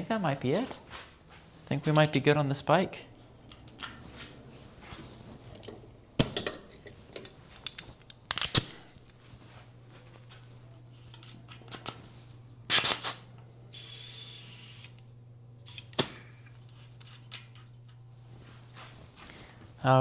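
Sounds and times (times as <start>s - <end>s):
air hissing: 12.7s - 15.0s, 15.7s - 16.8s.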